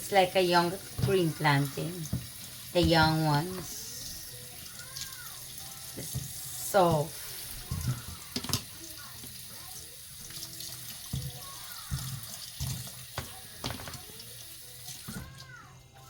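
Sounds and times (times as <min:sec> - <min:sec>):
tap running into a sink: 0:00.7 - 0:15.6
knocks and clatters in sink: 0:00.8 - 0:03.8, 0:06.0 - 0:09.4, 0:10.8 - 0:14.2.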